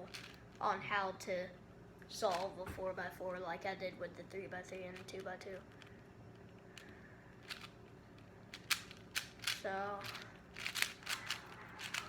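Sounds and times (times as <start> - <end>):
puzzle cube clicking as twisted: 6.8 - 7.8, 8.5 - 12.0.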